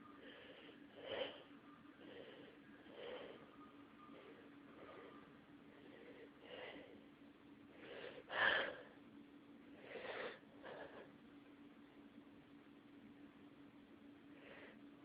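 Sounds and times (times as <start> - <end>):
congested nasal breathing: 0.1 - 7.1, 9.7 - 11.1.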